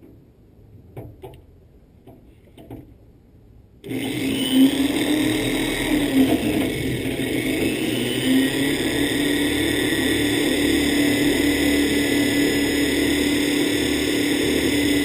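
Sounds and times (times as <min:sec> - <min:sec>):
electric drill whining: 0:03.8 - 0:15.0.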